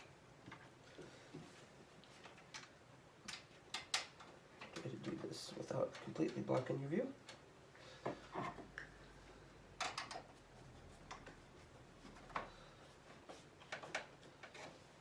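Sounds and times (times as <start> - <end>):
clicks and knocks of computer hardware: 9.8 - 10.4.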